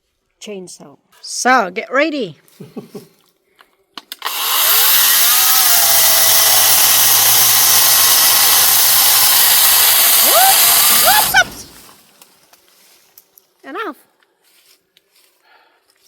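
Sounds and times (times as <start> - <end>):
battery chainsaw cutting branch: 4.1 - 12.0.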